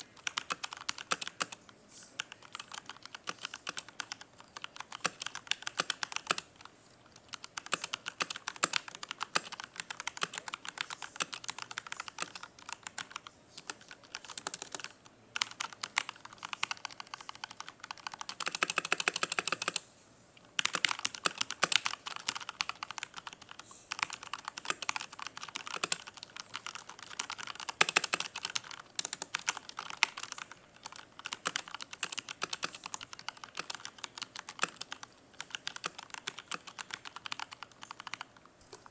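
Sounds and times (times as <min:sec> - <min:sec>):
mechanical keyboard typing: 0:00.0 - 0:19.8, 0:20.6 - 0:38.9.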